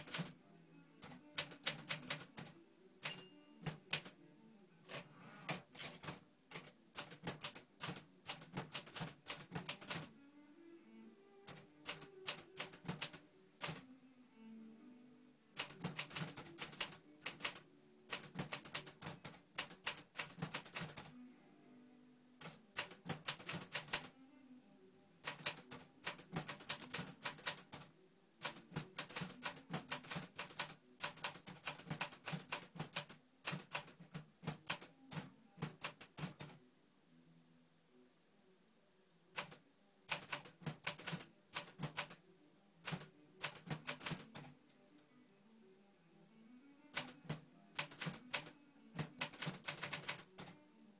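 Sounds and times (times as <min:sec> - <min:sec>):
typewriter key strikes: 0:01.4 - 0:04.1, 0:05.8 - 0:10.1, 0:11.9 - 0:13.8, 0:15.6 - 0:21.1, 0:22.4 - 0:24.1, 0:25.2 - 0:27.8, 0:28.4 - 0:36.5, 0:40.1 - 0:42.2, 0:42.8 - 0:44.4, 0:46.9 - 0:50.5.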